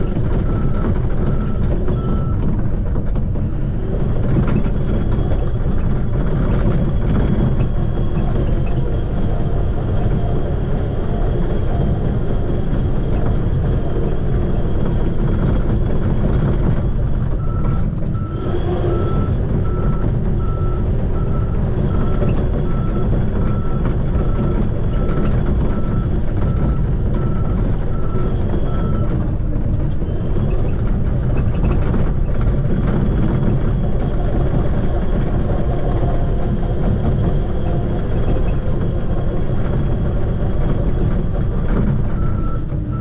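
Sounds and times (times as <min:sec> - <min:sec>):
reversing alarm beeping: 0:00.0 - 0:02.4, 0:17.3 - 0:29.1
bulldozer diesel engine rumbling: 0:00.0 - 0:43.0.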